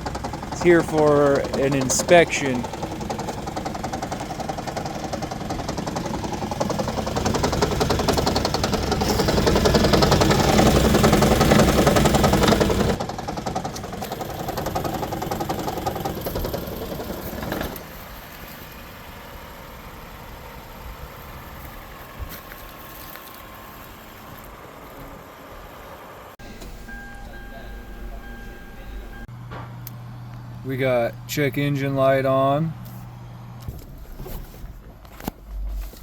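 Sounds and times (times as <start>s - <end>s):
engine running rough and knocking: 0.0s - 25.1s.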